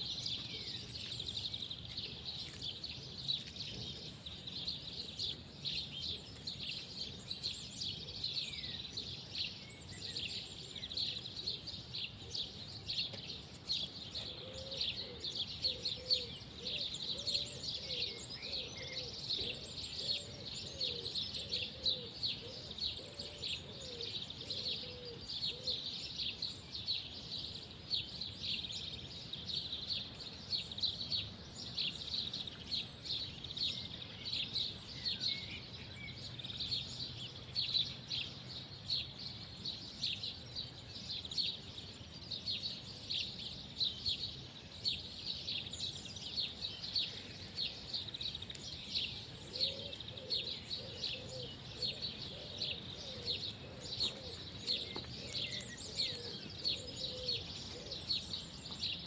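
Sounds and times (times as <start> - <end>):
songbirds chirping and twittering: 0.0 - 59.0
low cooing calls: 14.2 - 25.9, 47.0 - 58.5.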